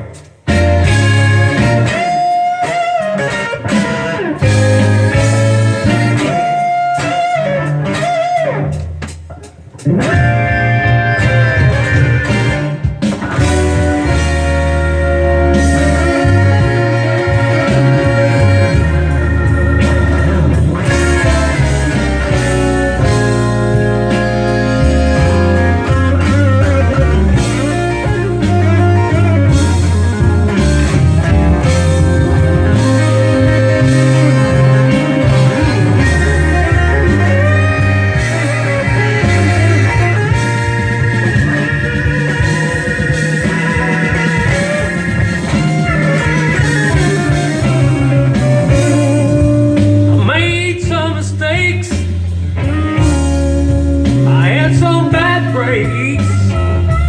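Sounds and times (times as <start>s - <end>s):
blues guitar solo: 0.0s - 57.0s
moving bass line: 0.0s - 57.0s
sustained organ chords: 0.0s - 57.0s.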